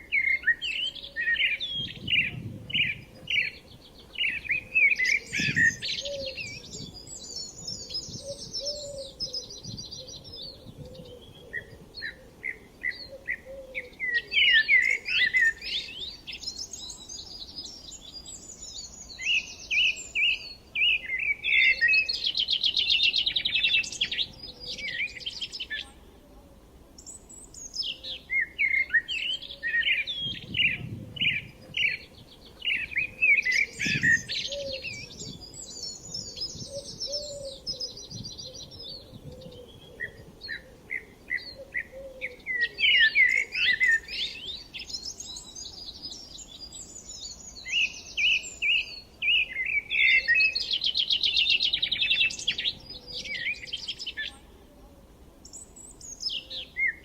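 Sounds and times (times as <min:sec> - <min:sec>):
songbirds singing and chirping: 0:00.0 - 0:57.0.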